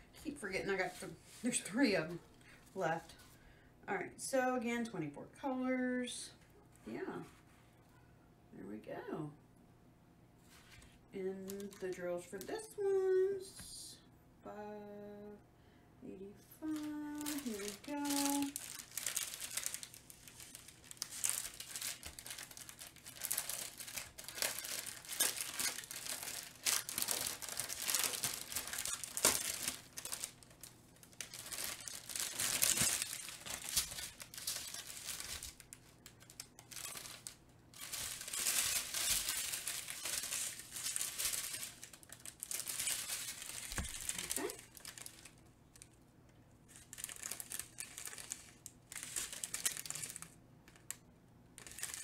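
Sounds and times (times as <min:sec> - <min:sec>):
plastic bags crinkling: 0:16.6 - 0:46.0, 0:46.7 - 0:51.0, 0:51.6 - 0:52.0.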